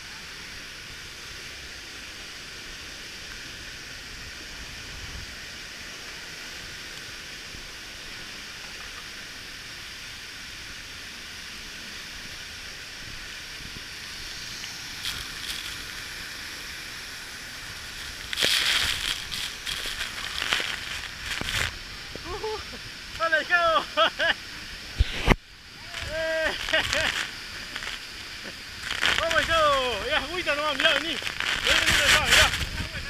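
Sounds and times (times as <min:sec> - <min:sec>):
waterfall rushing: 0:09.3 - 0:33.0
short crackles: 0:15.0 - 0:16.0, 0:17.8 - 0:21.8, 0:25.0 - 0:28.0, 0:28.8 - 0:32.9.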